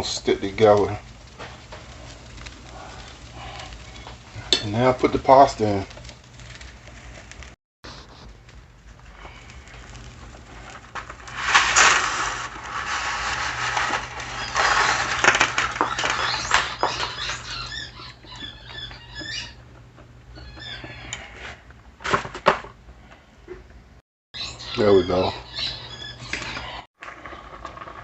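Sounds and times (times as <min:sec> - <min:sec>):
dry spaghetti clattering: 0:00.0 - 0:07.6, 0:08.5 - 0:18.6
water boiling: 0:00.0 - 0:22.2, 0:27.0 - 0:28.0
sharp clatters: 0:10.0 - 0:17.7
high squeaky chirps: 0:13.4 - 0:21.4, 0:24.4 - 0:26.8.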